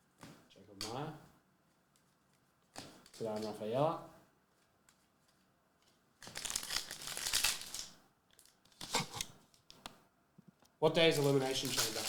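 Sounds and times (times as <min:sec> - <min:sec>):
foil wrapper crinkling and tearing: 0:06.2 - 0:09.7, 0:11.0 - 0:12.0.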